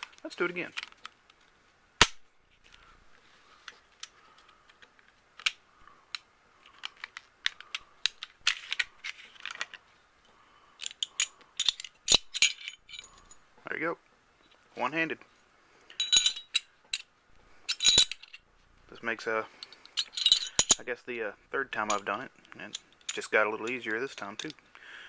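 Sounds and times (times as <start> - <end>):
pistol parts clicking and rattling: 0.0 - 1.4, 3.6 - 9.8, 10.8 - 13.4, 15.9 - 18.5, 19.5 - 20.9, 21.7 - 24.6
sharp metallic snap: 2.0 - 2.3.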